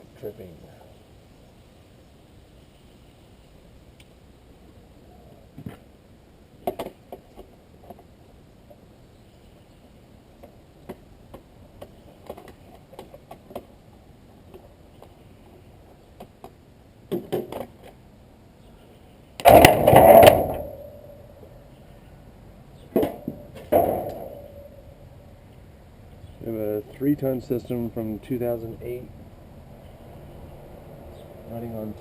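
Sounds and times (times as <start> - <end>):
loud clatter: 19.4 - 21.2.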